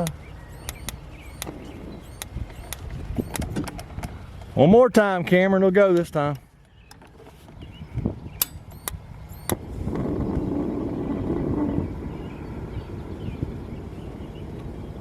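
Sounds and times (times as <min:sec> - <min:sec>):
road traffic rumble: 0:00.0 - 0:15.0
spark igniter ticks: 0:00.6 - 0:03.5.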